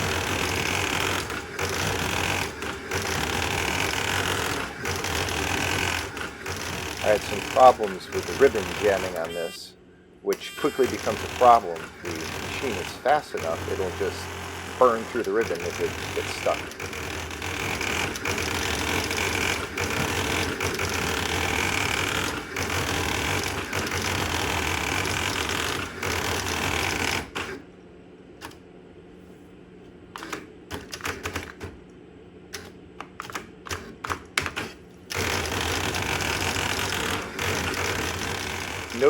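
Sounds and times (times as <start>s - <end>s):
printer type strikes clattering: 0.0s - 9.6s, 10.4s - 27.2s.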